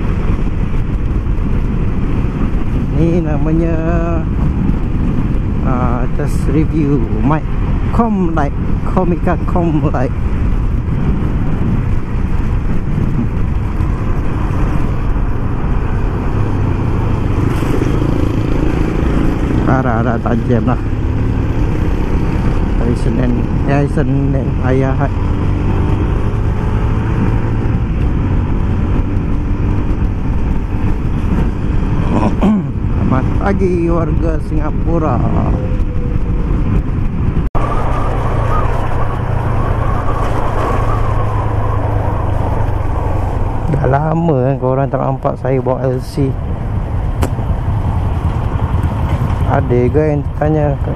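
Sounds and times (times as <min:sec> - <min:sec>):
wind rush on microphone: 0:00.0 - 0:50.9
motorcycle engine running: 0:10.2 - 0:44.6, 0:45.5 - 0:50.9.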